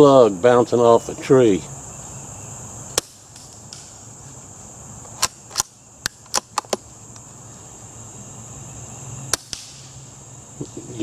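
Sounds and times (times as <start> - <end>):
bullet hitting a tree: 2.9 - 4.0, 5.1 - 7.2, 9.3 - 10.0
suppressed rifle shot clicks: 5.1 - 7.3.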